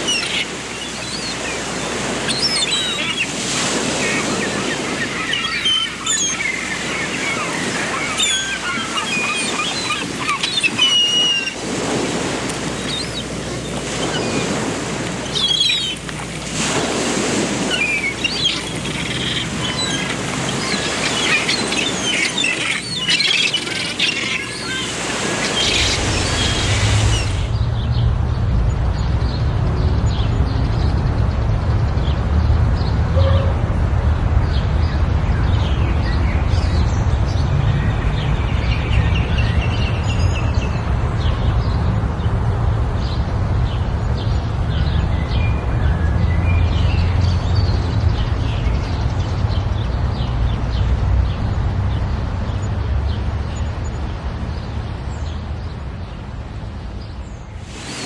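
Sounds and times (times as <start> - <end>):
small birds chirping: 0.0 - 16.8, 17.4 - 27.6, 57.0 - 58.0
low rumble of wind or surf: 0.0 - 58.0
bright hiss: 57.6 - 58.0.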